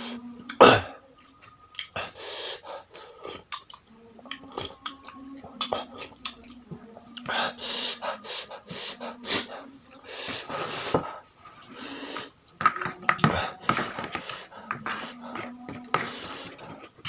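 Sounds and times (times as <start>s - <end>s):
wet chewing: 1.2s - 2.0s, 2.9s - 7.4s
hissing breaths: 1.9s - 3.5s, 7.2s - 12.5s, 13.2s - 17.0s.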